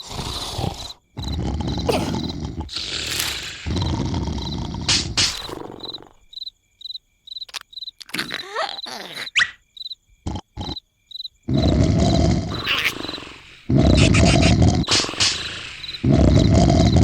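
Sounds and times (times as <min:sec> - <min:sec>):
heavy snoring: 0:00.0 - 0:06.2, 0:11.5 - 0:17.0
crickets chirping: 0:00.0 - 0:17.0.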